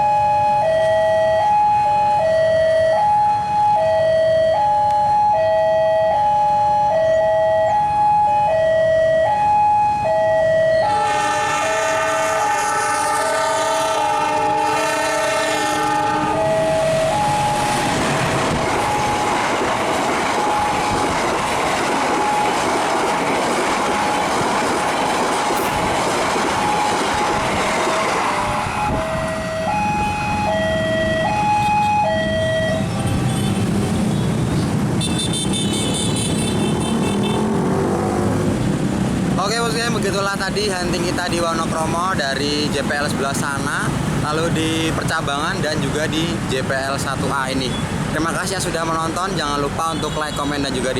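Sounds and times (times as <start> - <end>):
two-tone crossing alarm: 0.0 - 37.4
train passing: 0.0 - 50.9
train horn: 10.8 - 17.1, 27.6 - 30.4.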